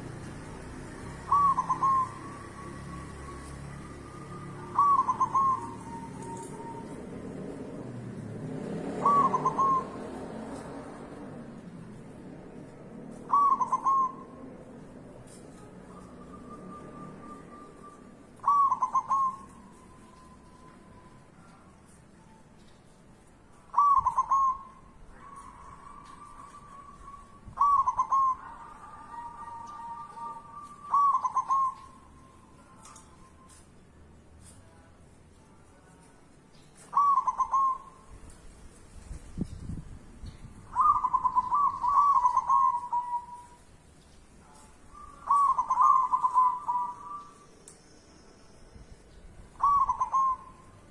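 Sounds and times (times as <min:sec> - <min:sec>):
dove cooing: 0:00.0 - 0:08.0, 0:08.8 - 0:10.6, 0:13.1 - 0:20.7, 0:23.7 - 0:33.6, 0:36.8 - 0:38.1, 0:40.6 - 0:43.6, 0:44.5 - 0:47.5, 0:49.5 - 0:50.9
bird whistled calls: 0:01.2 - 0:07.3, 0:09.0 - 0:10.0, 0:13.3 - 0:14.4, 0:15.8 - 0:21.3, 0:23.7 - 0:33.7, 0:36.9 - 0:38.1, 0:40.6 - 0:43.6, 0:44.8 - 0:48.7, 0:49.5 - 0:50.9
faint steady whistling tone: 0:01.3 - 0:07.2, 0:15.5 - 0:22.8.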